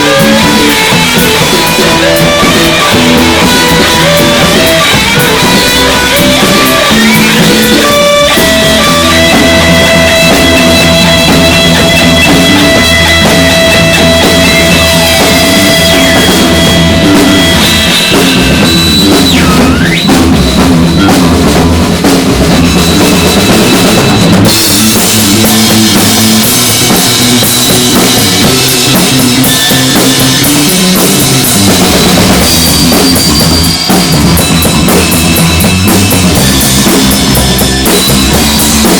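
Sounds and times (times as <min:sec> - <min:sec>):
electronic noise: 0:00.0 - 0:21.6
high whining tones: 0:00.0 - 0:21.8, 0:22.6 - 0:38.9
bass guitar: 0:00.0 - 0:38.9
drum kit: 0:00.0 - 0:38.9
electric guitar: 0:00.0 - 0:38.9.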